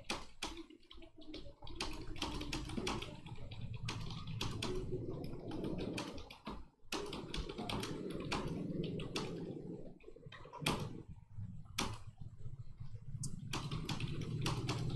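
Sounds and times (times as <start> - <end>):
keyboard typing: 0.0 - 14.9.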